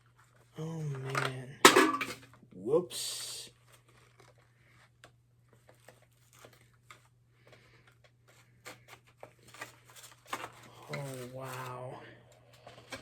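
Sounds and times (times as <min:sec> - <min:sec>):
packaging clicks and rustles: 0:03.6 - 0:13.0.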